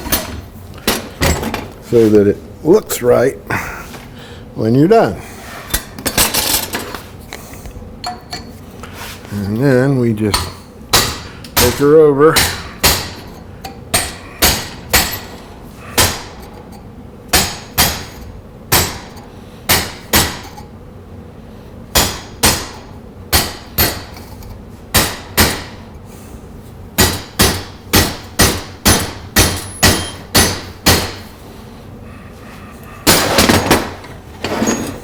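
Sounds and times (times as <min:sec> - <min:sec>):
hammer striking metal: 0:10.3 - 0:15.4, 0:16.0 - 0:16.4, 0:17.3 - 0:20.6, 0:22.0 - 0:24.2, 0:25.0 - 0:25.8, 0:27.0 - 0:31.3.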